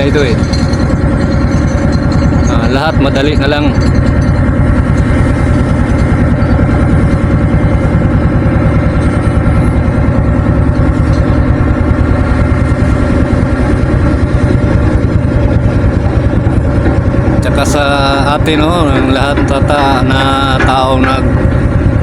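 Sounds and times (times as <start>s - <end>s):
heavy engine running: 0.0s - 22.0s.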